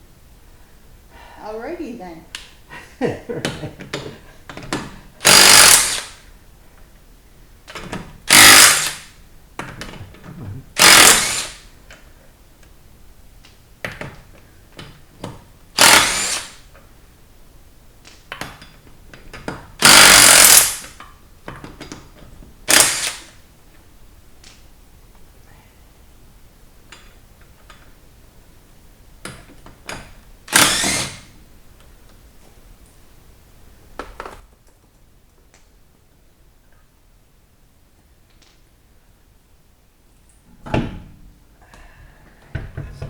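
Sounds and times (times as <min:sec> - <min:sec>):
impact wrench hammering: 0:05.2 - 0:06.2, 0:08.3 - 0:09.1, 0:10.8 - 0:11.6, 0:15.8 - 0:16.6, 0:19.8 - 0:21.0, 0:22.7 - 0:23.3, 0:30.5 - 0:31.3.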